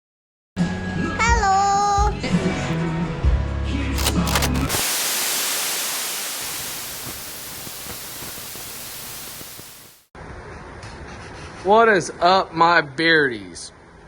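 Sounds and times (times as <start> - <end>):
music: 0.6 - 4.7
static hiss: 4.0 - 10.1.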